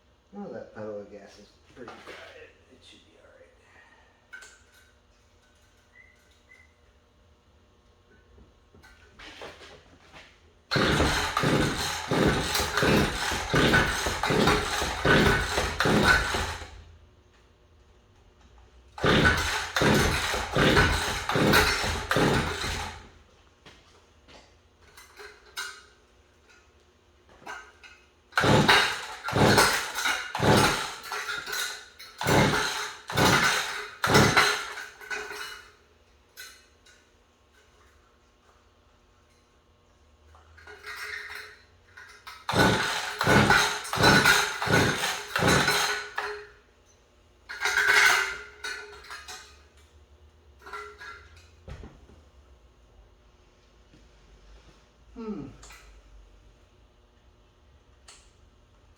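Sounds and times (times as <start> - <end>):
small gasoline engine cranking: 10.7 - 16.9, 18.9 - 23.2, 28.4 - 35.2, 42.4 - 46.3.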